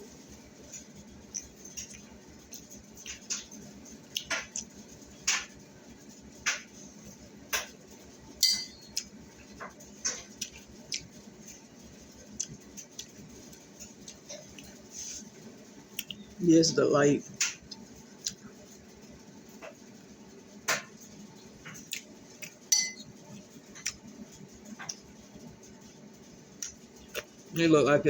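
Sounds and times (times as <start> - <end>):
dishes and utensils clinking: 8.4 - 9.0, 22.7 - 23.2.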